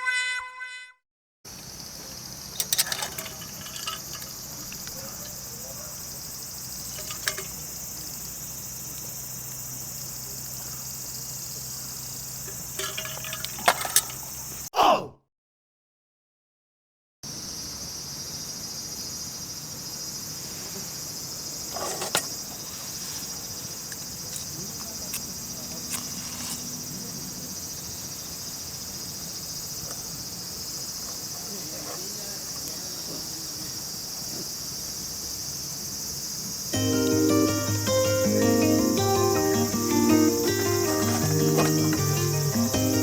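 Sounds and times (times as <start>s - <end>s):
insects chirring: 1.5s - 14.7s, 17.3s - 43.0s.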